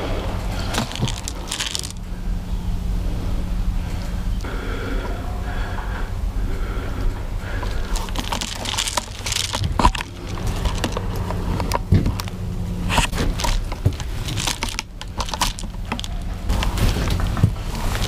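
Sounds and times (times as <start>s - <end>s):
crunching and rustling: 0.0s - 2.2s, 7.4s - 18.0s
low hum: 0.0s - 18.0s.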